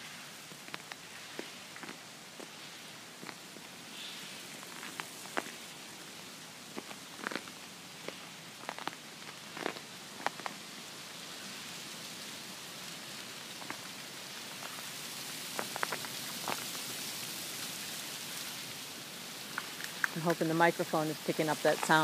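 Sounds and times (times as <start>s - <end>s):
wind hiss: 0.0s - 22.0s
icy branches cracking: 15.4s - 16.9s.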